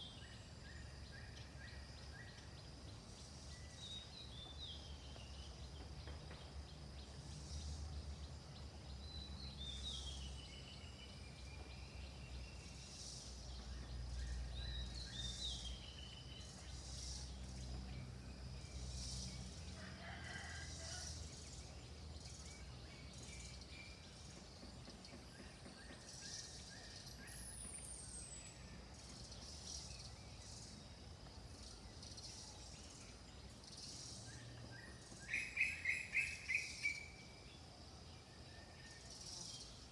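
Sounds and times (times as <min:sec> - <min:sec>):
distant rooster crowing: 0:19.7 - 0:21.4
pulsing insect chirr: 0:26.0 - 0:39.9.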